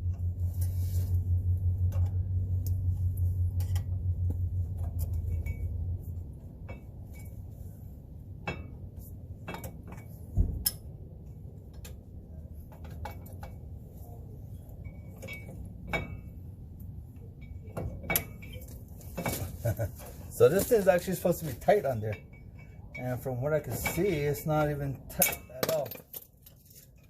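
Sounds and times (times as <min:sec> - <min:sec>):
metal tools clinking and knocking: 0:14.7 - 0:16.5, 0:17.2 - 0:27.0.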